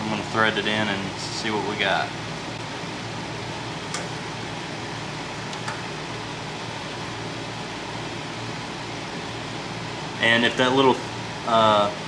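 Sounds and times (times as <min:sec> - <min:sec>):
fan-like background noise: 0:00.0 - 0:12.0.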